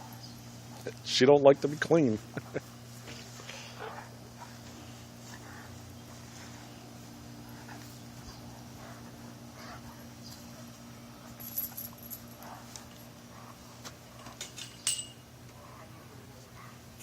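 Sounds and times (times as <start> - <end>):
steady low hum: 0.0 - 17.0
light clinks: 14.2 - 15.3.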